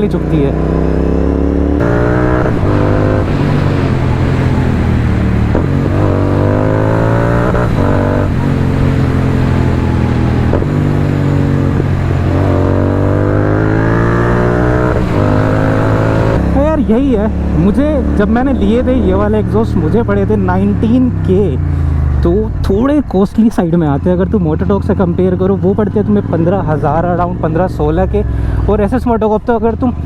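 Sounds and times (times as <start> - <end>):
motorcycle engine revving: 0.0 - 22.6.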